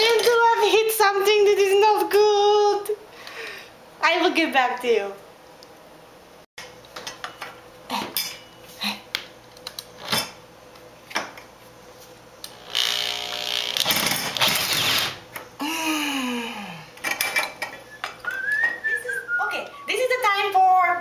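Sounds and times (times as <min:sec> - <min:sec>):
power drill bursts: 0:12.6 - 0:15.2.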